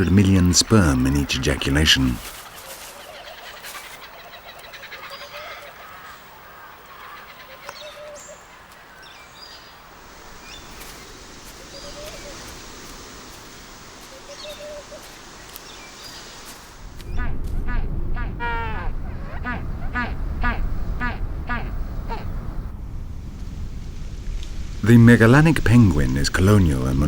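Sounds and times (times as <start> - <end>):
outdoor background hiss: 0.0 - 27.0
short bird calls: 2.2 - 9.8, 10.4 - 22.6.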